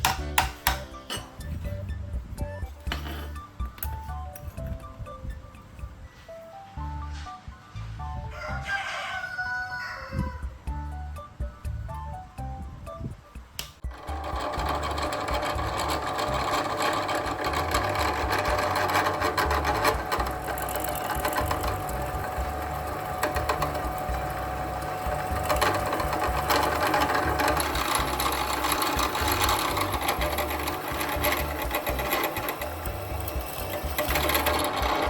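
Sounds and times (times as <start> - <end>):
electric power tool running: 13.9 - 35.0.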